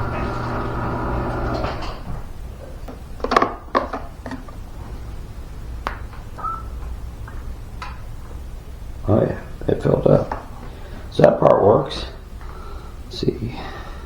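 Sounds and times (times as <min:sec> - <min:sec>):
garage door opener motor: 0:00.0 - 0:02.3.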